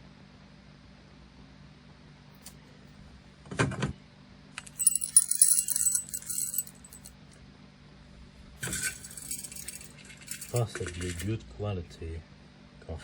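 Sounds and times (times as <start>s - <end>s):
coffee beans rattling into container: 4.8s - 7.1s, 8.6s - 11.2s.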